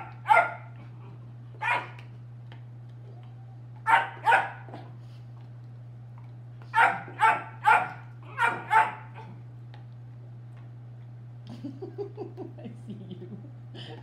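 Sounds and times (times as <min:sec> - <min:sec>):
dog barking: 0:00.0 - 0:00.7, 0:01.6 - 0:02.0, 0:03.9 - 0:04.8, 0:06.8 - 0:09.3.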